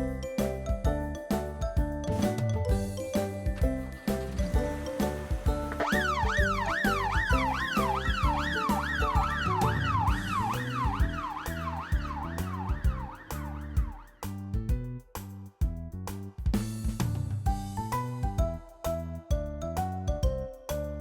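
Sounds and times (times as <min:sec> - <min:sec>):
cheerful music with steady beat: 0:00.0 - 0:21.0
emergency siren sweeping: 0:05.7 - 0:14.2.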